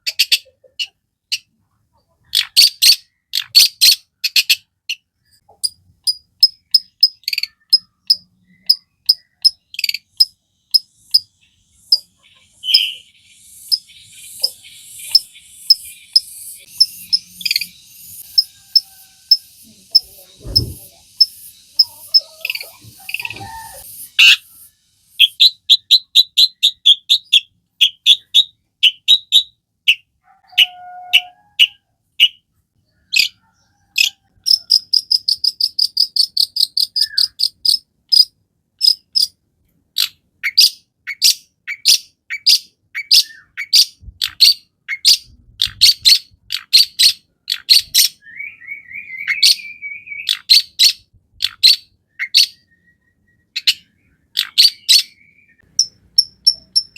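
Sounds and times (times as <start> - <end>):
shrike singing: 6.1 - 32.4.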